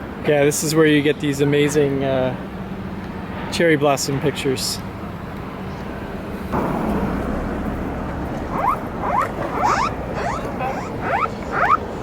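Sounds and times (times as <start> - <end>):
phone alert rising tones: 8.5 - 11.8.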